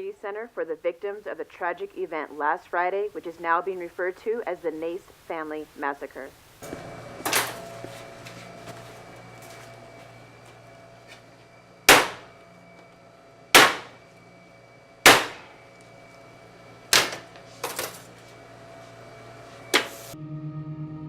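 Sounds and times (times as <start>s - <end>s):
steady low hum: 0.0s - 20.2s
loud sharp ringing bangs: 11.9s - 12.4s, 13.5s - 14.0s, 15.0s - 15.6s.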